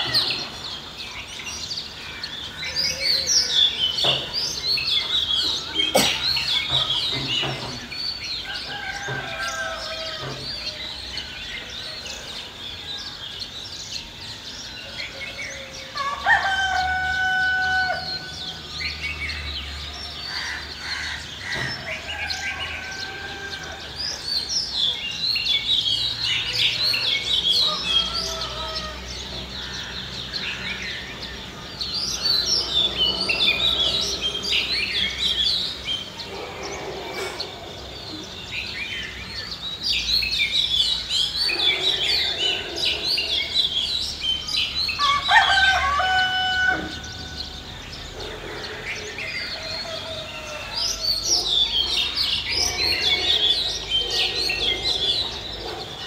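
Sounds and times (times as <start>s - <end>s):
small birds chirping: 0.0s - 16.5s, 17.9s - 56.0s
rooster crowing: 8.4s - 10.9s, 15.1s - 18.6s, 21.6s - 24.0s, 26.8s - 29.3s, 45.0s - 47.6s, 49.5s - 51.4s.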